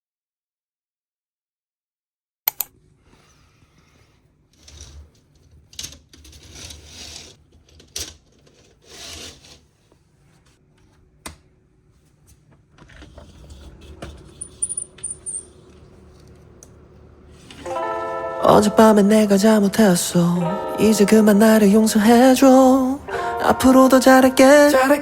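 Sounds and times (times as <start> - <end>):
high metallic tinkles: 17.6 - 25.0.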